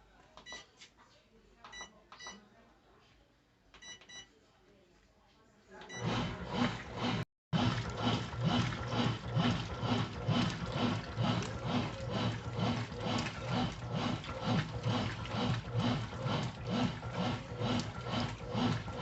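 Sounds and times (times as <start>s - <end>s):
washing machine agitating: 5.9s - 19.0s
water and clothes swishing: 6.0s - 19.0s.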